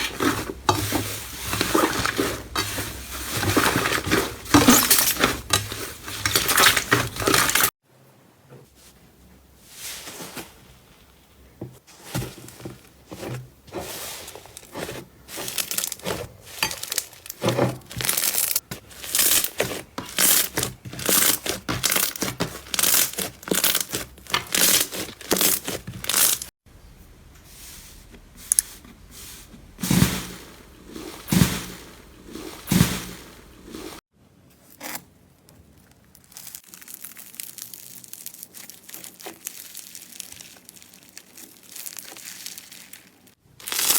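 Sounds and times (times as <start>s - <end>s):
slime crackling and popping: 35.7s - 43.9s.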